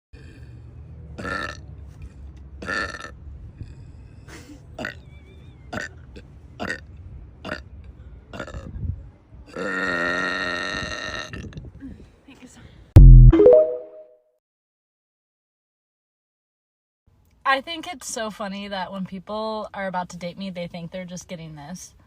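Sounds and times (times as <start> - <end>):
woman burping: 4.8 - 5.0, 9.5 - 11.7.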